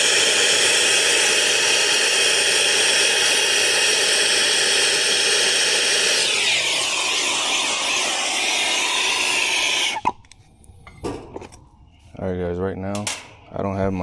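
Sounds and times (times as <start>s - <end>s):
torch burning with loud hiss: 0.0s - 10.2s.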